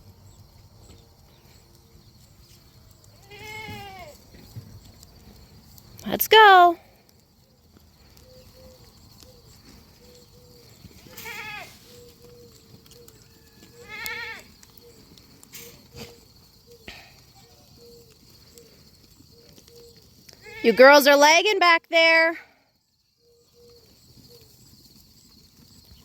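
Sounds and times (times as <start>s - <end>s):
goats bleating: 3.2s - 4.2s, 11.0s - 11.9s, 13.4s - 14.5s.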